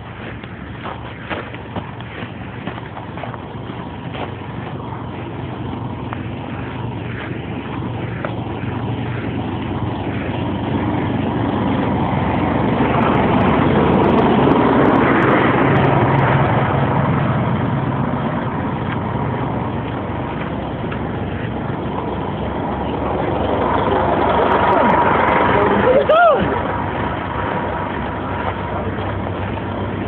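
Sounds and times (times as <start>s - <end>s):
vehicle passing: 0.0s - 30.0s.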